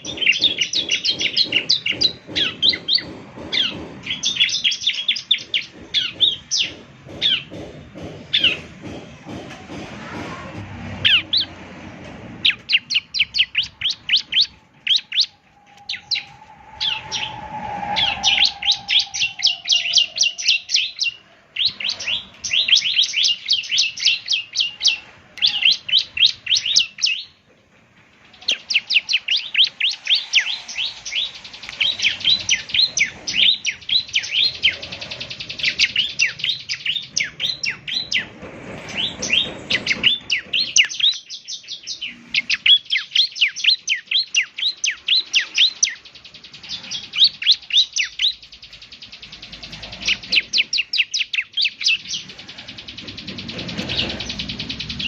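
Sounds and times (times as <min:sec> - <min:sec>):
bird singing high chirps: 0:12.5 - 0:27.4, 0:28.3 - 0:38.3, 0:38.9 - 0:55.0.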